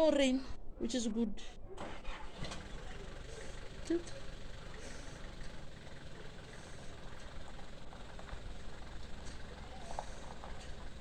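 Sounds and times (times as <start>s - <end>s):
truck engine idling: 1.8s - 11.0s.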